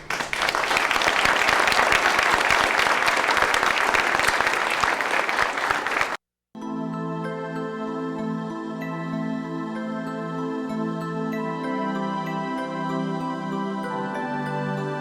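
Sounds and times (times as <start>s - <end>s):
audience applauding: 0.0s - 6.2s.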